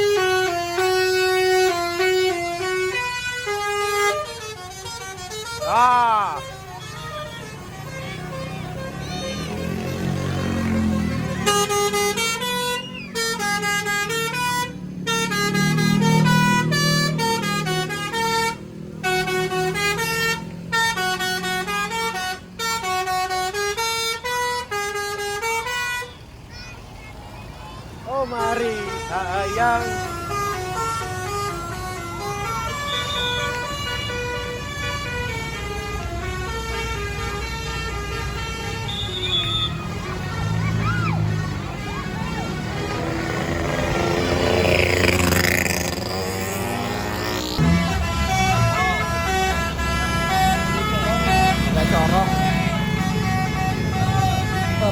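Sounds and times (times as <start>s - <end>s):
musical air horn tune: 0.0s - 9.3s, 9.9s - 26.1s, 28.4s - 40.7s, 41.7s - 54.9s
bus engine running: 0.0s - 54.9s
low engine noise: 27.5s - 54.9s.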